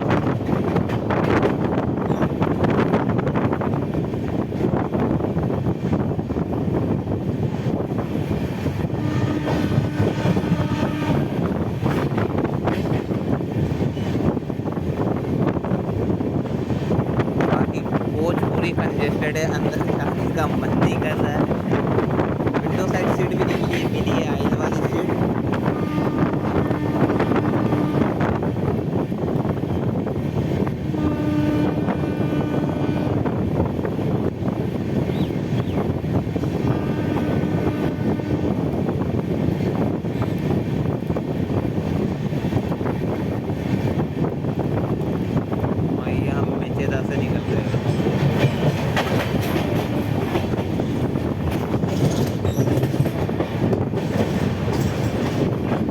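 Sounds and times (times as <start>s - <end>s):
train wheels rumbling on track: 0.0s - 55.9s
wind on microphone: 0.0s - 55.9s.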